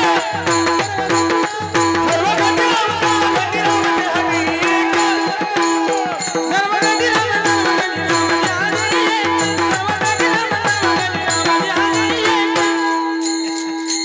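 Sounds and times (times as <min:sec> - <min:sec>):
hand drum rhythm: 0:00.0 - 0:13.2
small hand cymbals ringing: 0:05.1 - 0:14.0.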